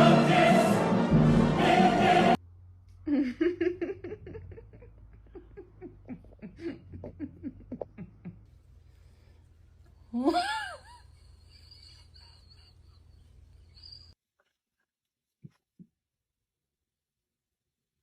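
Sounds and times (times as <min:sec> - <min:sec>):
person laughing: 0:03.0 - 0:08.5, 0:10.1 - 0:13.3.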